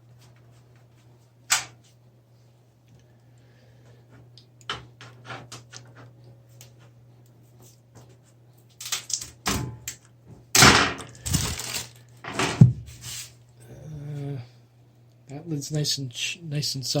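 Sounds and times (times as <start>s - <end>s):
faint low hum: 0.0s - 17.0s
computer case parts clicking: 8.8s - 12.6s.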